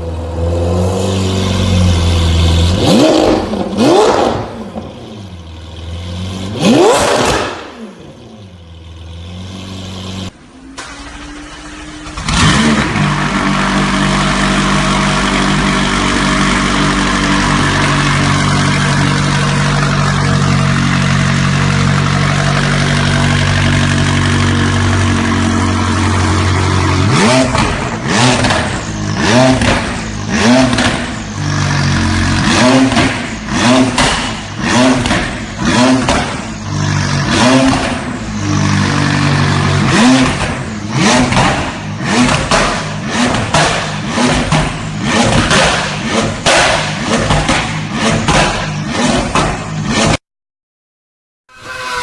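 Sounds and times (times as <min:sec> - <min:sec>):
engine revving: 0:00.0 - 0:50.2
exhaust pops and crackles: 0:40.2 - 0:49.7.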